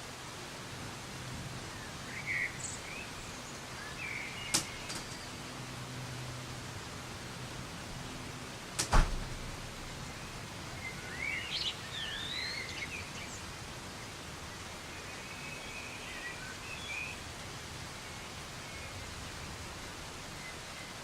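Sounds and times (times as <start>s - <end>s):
soft rain hiss: 0.0s - 21.0s
birds chirping: 1.7s - 5.5s, 9.0s - 17.3s.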